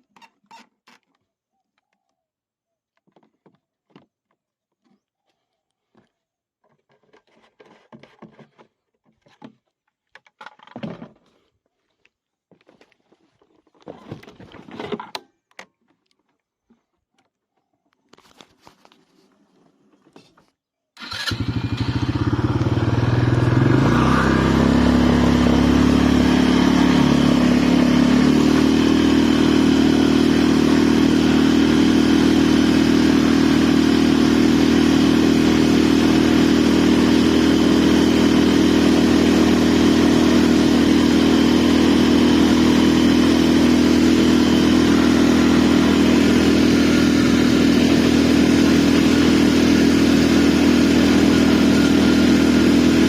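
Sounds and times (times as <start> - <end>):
atv engine running: 21.0 - 53.0.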